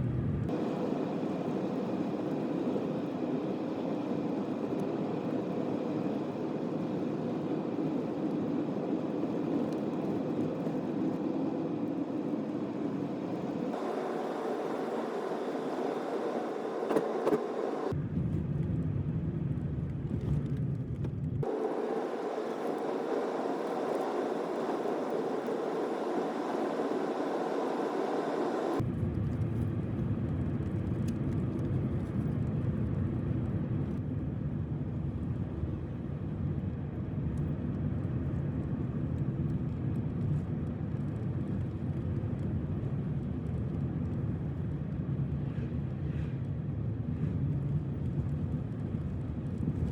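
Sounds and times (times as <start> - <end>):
vehicle road and engine noise: 0.0 - 28.8.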